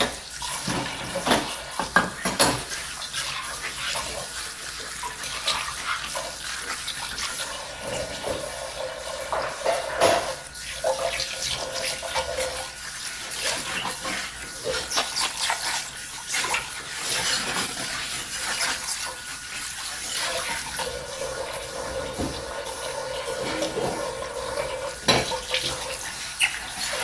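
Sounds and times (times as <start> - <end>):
running tap water: 0.0 - 27.0
dishes clinking: 9.3 - 10.4, 21.9 - 24.3, 25.0 - 25.9.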